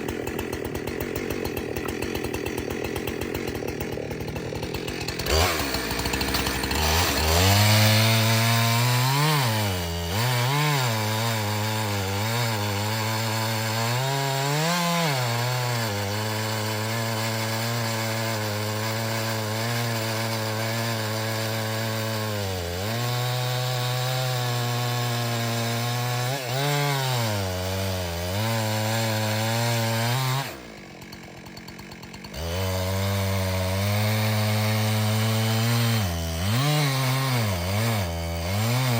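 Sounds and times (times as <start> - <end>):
chainsaw cutting through log: 0.0 - 38.9.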